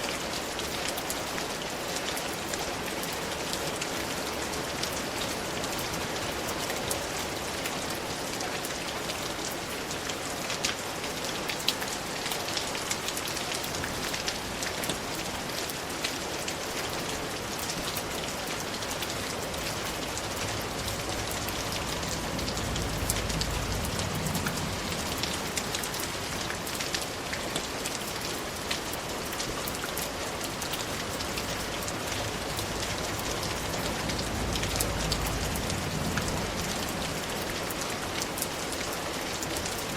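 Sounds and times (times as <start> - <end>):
steady rain falling: 0.0 - 39.9
low rumble: 19.5 - 26.6, 31.6 - 37.6.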